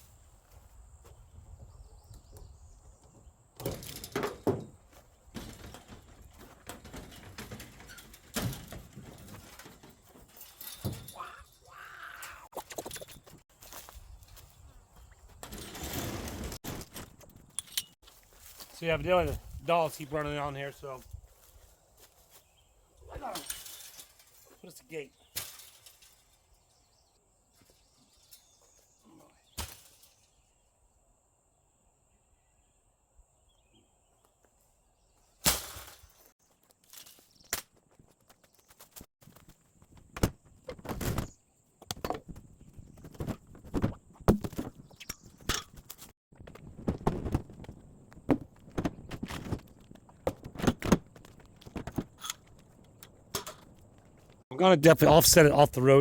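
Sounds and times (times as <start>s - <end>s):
footsteps outdoors: 0.0s - 3.6s, 4.5s - 25.4s, 26.0s - 29.3s, 34.0s - 35.4s, 36.0s - 56.0s
knocks and clunks: 2.3s - 11.2s.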